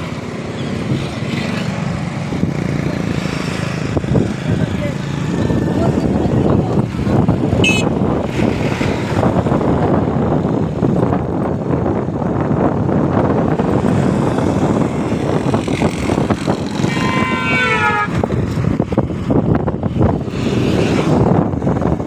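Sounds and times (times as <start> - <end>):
loud rushing noise: 12.0 - 22.0.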